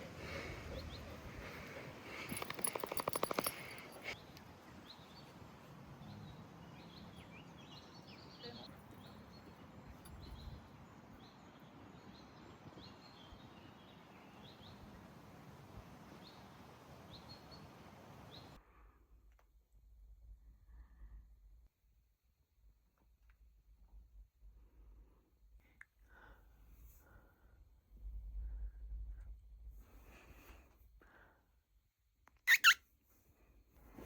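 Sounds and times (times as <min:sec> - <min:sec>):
small birds chirping: 0:00.0 - 0:15.0, 0:32.5 - 0:32.8
rapid rattling buzz: 0:01.4 - 0:04.2.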